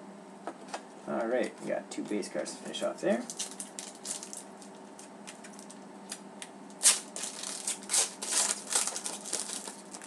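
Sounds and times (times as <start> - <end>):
card pack wrapper crinkling: 3.3 - 6.2, 6.8 - 10.0.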